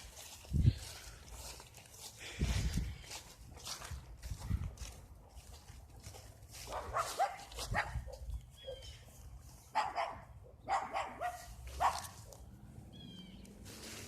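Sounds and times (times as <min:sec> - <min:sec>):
big dog barking: 0:06.6 - 0:08.8, 0:09.7 - 0:12.4.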